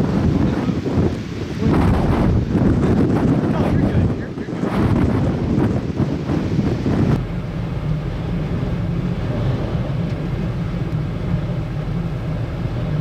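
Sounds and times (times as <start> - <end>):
low rumble: 0.0 - 13.0
wind buffeting microphone: 0.0 - 13.0.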